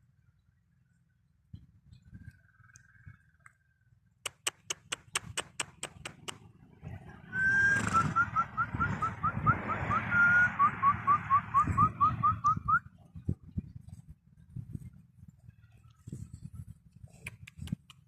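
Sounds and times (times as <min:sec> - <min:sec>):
high whistled notes: 0:07.3 - 0:12.8
short rising chirps: 0:07.4 - 0:12.8.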